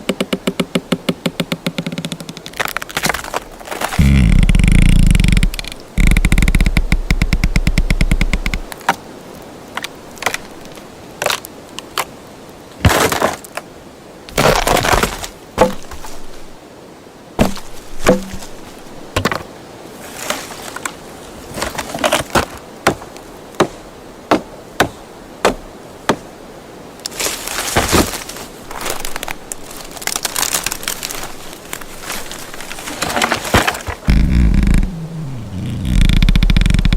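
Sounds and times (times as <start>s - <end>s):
wood splintering crunches: 0.0s - 8.8s, 10.2s - 11.4s, 12.8s - 13.6s, 14.3s - 16.6s, 17.4s - 19.4s, 27.1s - 36.9s
wood cracking and snapping: 0.0s - 8.9s, 9.8s - 12.1s, 14.3s - 16.6s, 17.4s - 19.4s, 27.1s - 36.9s.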